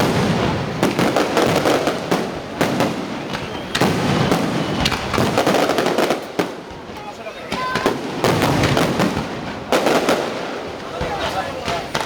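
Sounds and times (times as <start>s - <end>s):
fireworks bursting: 0.0s - 12.0s.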